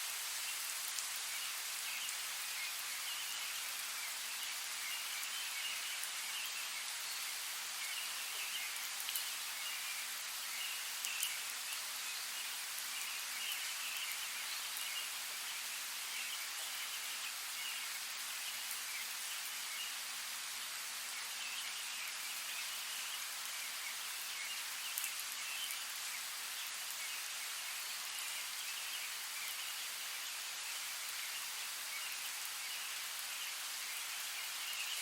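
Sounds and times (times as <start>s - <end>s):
rain falling in a forest: 0.0s - 35.0s
sharp water drips: 10.8s - 11.9s.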